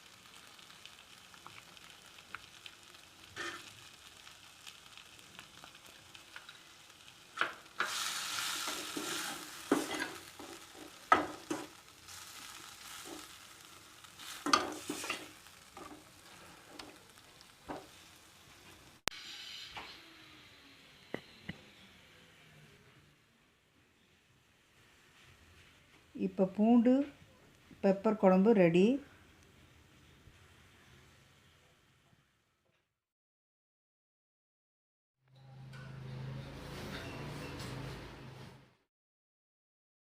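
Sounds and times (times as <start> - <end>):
food sizzling in a pan: 0.0 - 20.9
spoon scraping and knocking pan: 3.4 - 3.7, 7.3 - 11.8, 14.2 - 17.0, 17.6 - 18.0.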